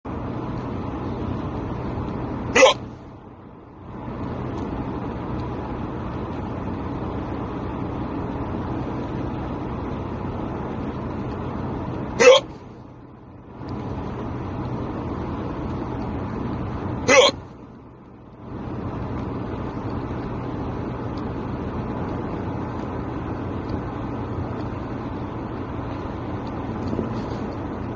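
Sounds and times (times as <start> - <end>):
car interior noise: 0.1 - 27.9
person hiccuping: 2.5 - 2.9, 12.2 - 12.6, 17.0 - 17.4.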